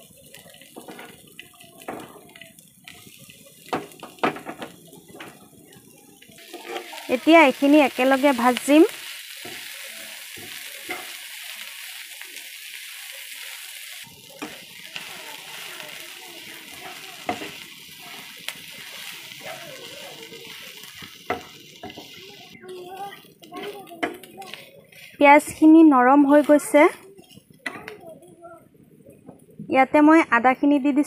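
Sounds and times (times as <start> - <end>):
onions sizzling in hot oil: 0.0 - 28.1
spatula scraping a pan: 6.4 - 7.1, 9.3 - 11.2, 16.5 - 19.6, 23.0 - 25.6.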